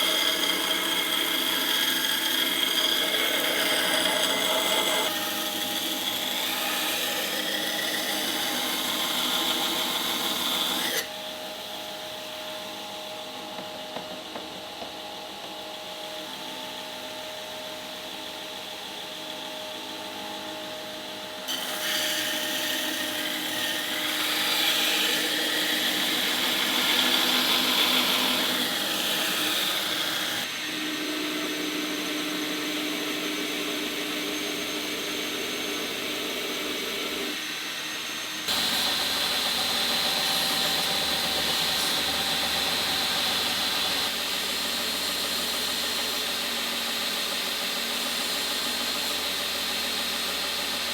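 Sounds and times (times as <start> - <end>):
power tools running: 21.5 - 50.9.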